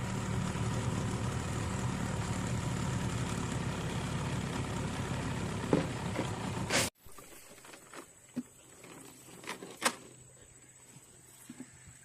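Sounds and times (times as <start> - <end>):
outboard motor idling: 0.0 - 6.9.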